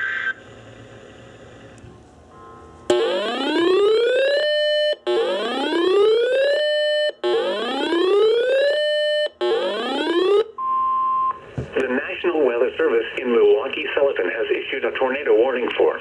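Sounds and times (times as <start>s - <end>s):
electronic siren wail: 2.9s - 10.6s.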